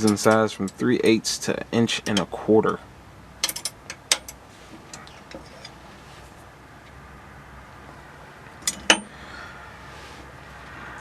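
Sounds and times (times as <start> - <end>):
metal wrenches clinking: 3.4 - 5.8, 8.6 - 9.2.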